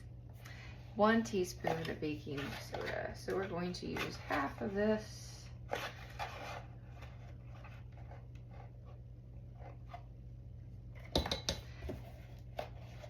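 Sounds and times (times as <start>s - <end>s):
steady low hum: 0.0s - 13.0s
spoon scraping baking soda: 1.0s - 10.2s, 12.0s - 13.0s.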